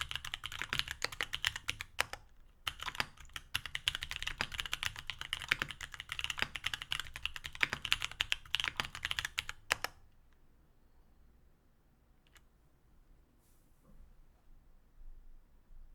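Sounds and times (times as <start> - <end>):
fast typing on mechanical keyboard: 0.0 - 10.0.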